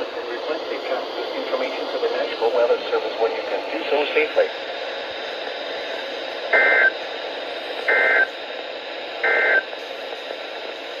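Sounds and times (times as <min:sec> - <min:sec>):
radio hiss: 0:00.0 - 0:11.0
data bursts: 0:06.6 - 0:06.9, 0:09.2 - 0:09.6.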